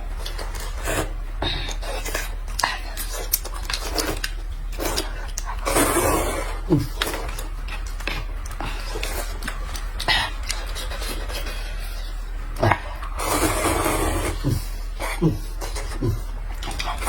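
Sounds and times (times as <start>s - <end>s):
noodle slurping: 4.8s - 7.2s, 12.8s - 17.0s.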